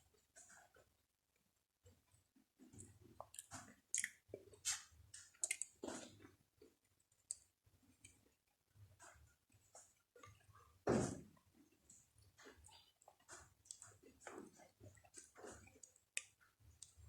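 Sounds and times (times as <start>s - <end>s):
close chewing with wet mouth clicks: 2.8s - 8.4s, 9.5s - 10.8s, 11.7s - 17.0s.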